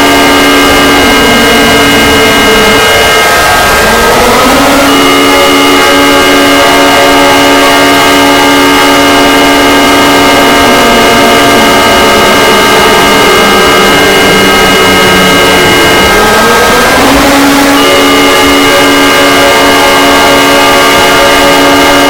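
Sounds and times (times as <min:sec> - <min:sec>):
distortion hiss: 0:00.0 - 0:16.3
emergency alert alarm chord: 0:00.0 - 0:22.0.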